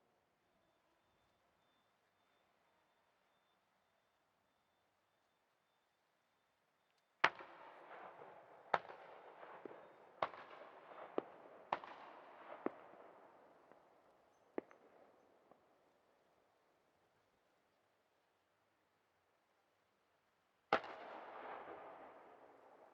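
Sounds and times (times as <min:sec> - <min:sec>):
rolling echo: 0:07.2 - 0:15.6, 0:20.7 - 0:22.9.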